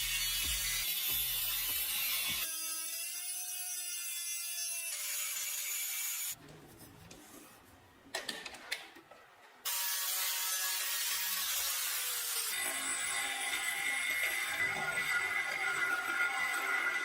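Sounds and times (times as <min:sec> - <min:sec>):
power tool whining on metal: 0:09.7 - 0:17.0.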